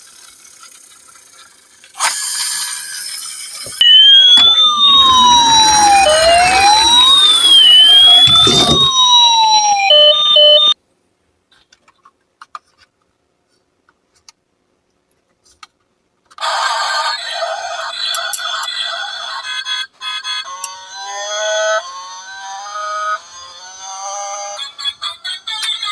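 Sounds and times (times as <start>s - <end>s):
emergency vehicle siren wailing: 3.8s - 10.8s
stepped electronic tone: 3.8s - 10.8s.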